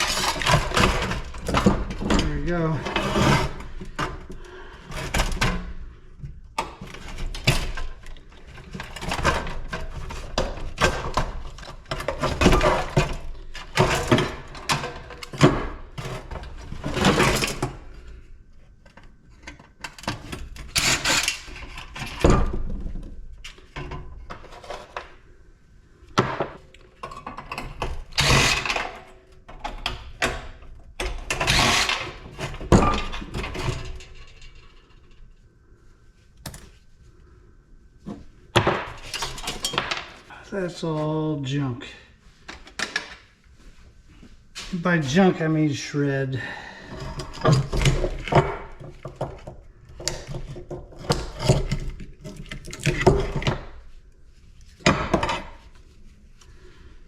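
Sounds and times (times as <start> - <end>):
metal parts clanking and rattling: 0.0 - 6.0, 6.6 - 18.1, 18.8 - 25.2, 26.2 - 35.4, 38.5 - 40.3, 46.8 - 53.9.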